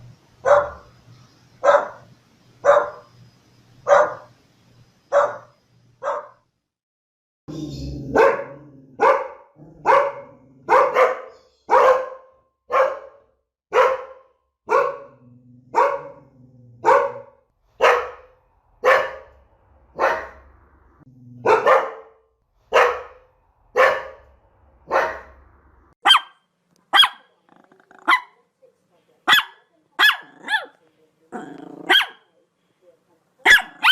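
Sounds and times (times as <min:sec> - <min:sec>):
dog barking: 0:00.4 - 0:00.9, 0:01.6 - 0:03.1, 0:03.8 - 0:04.3, 0:05.1 - 0:06.4, 0:08.1 - 0:20.4, 0:21.4 - 0:25.4, 0:26.0 - 0:27.3, 0:28.0 - 0:28.4, 0:29.2 - 0:30.8, 0:31.8 - 0:32.3, 0:33.4 - 0:33.9.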